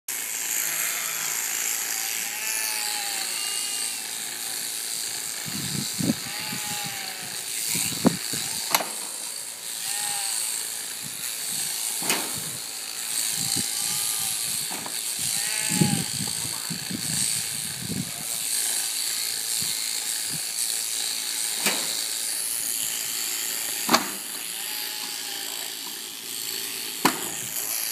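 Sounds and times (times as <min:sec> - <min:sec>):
electric shears running: 0:00.1 - 0:27.9
sheep bleating: 0:00.5 - 0:04.0, 0:06.1 - 0:07.5, 0:09.8 - 0:10.5, 0:13.3 - 0:16.6, 0:24.4 - 0:25.8
sharp clicks and knocks: 0:23.9 - 0:24.2.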